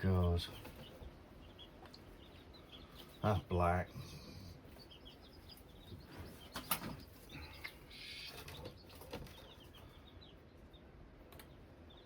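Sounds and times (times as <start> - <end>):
faint high bird chirps: 0.0 - 12.0
sharp clicks: 11.3 - 11.6.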